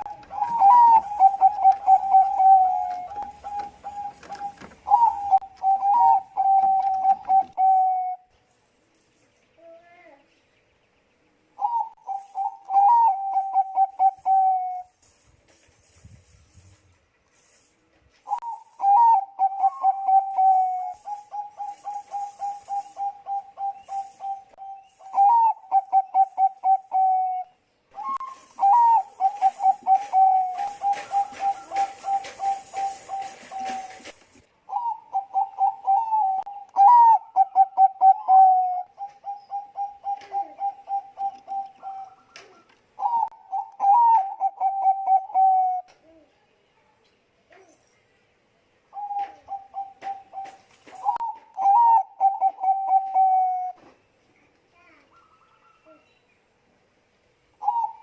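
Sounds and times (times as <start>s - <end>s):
dove cooing trill: 0.0s - 8.3s, 11.6s - 15.0s, 18.3s - 46.2s, 48.9s - 53.9s, 57.6s - 58.0s.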